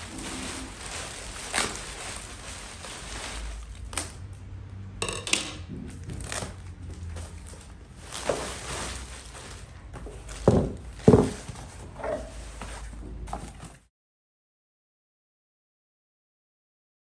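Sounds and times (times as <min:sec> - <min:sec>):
packaging rustling and crinkling: 0:00.0 - 0:04.2, 0:05.9 - 0:13.9.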